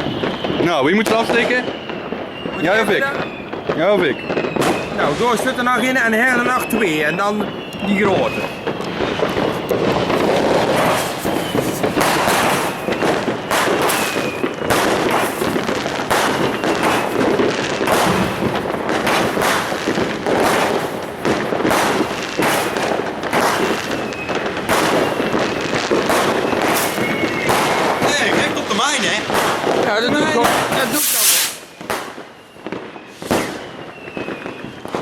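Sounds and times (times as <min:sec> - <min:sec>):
firecracker bangs and crackles: 0:00.0 - 0:35.0.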